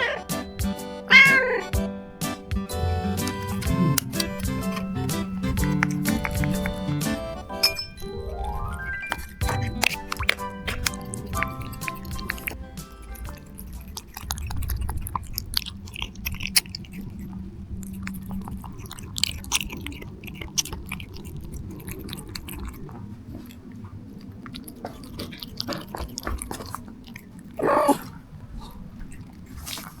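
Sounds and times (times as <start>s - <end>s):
cat chewing and biting: 0.0s - 30.0s.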